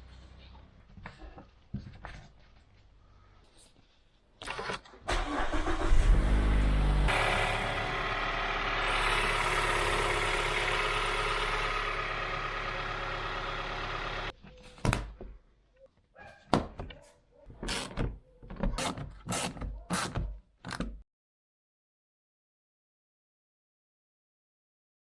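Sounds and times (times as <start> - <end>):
car engine idling: 5.3 - 14.3.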